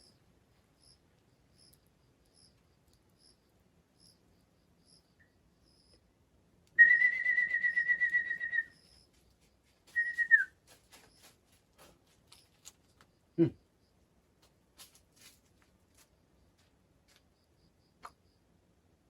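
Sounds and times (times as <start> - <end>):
warbling whistle: 6.8 - 8.7.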